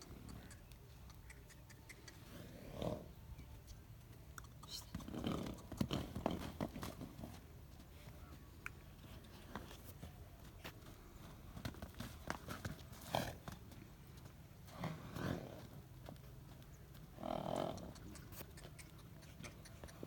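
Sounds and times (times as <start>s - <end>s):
animal calls and snorts: 0.0s - 7.0s, 14.7s - 15.8s, 17.2s - 20.0s.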